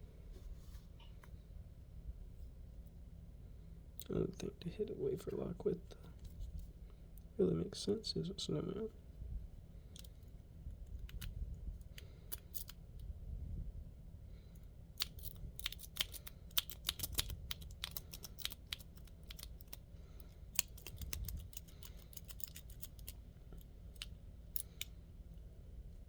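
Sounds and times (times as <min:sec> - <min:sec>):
lock pick clicking and scraping: 0:15.0 - 0:19.8, 0:20.5 - 0:23.2.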